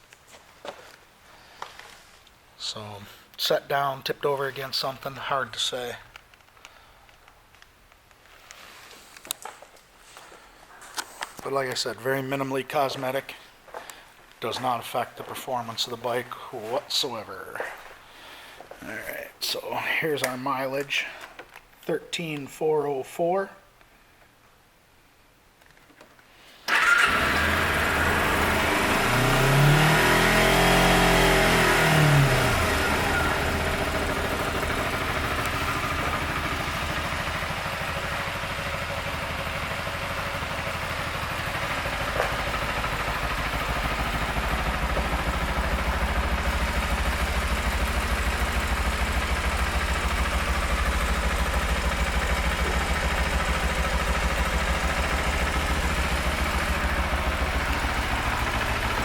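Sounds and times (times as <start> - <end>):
motorcycle engine revving and idling: 26.7 - 59.0.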